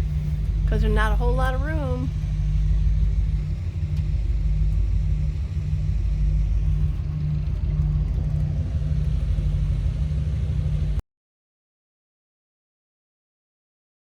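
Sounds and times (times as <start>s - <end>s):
boat engine idling: 0.0s - 11.0s.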